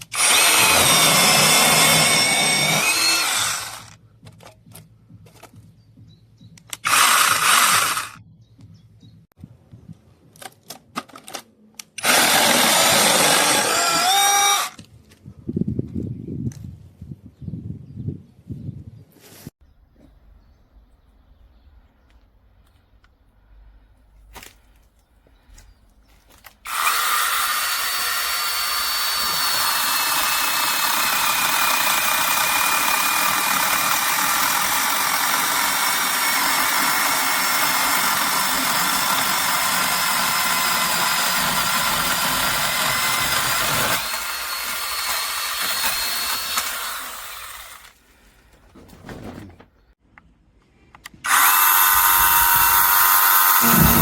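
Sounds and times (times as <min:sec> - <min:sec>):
mini chainsaw whining: 0:00.0 - 0:04.0, 0:06.7 - 0:08.2, 0:12.0 - 0:14.8, 0:26.6 - 0:48.0, 0:51.2 - 0:54.0.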